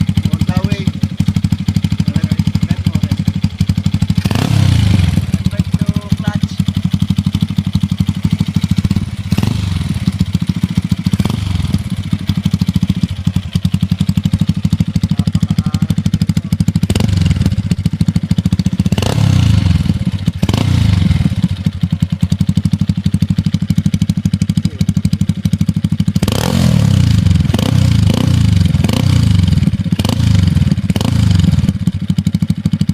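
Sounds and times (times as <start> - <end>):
motorcycle engine idling and revving: 0.0 - 32.9.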